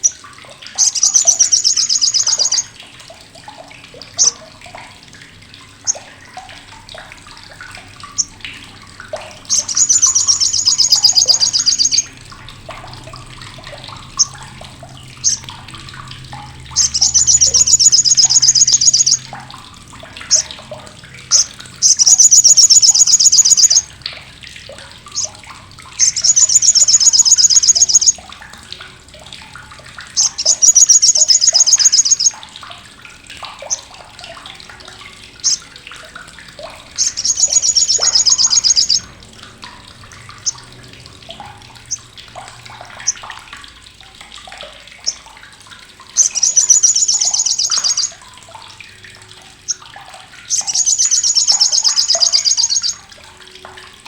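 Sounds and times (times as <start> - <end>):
sunbird harsh chattering rattles: 0.8 - 2.6, 9.5 - 12.1, 16.8 - 19.3, 21.3 - 23.8, 26.0 - 28.2, 30.2 - 32.3, 37.0 - 39.0, 46.2 - 48.1, 50.5 - 53.0.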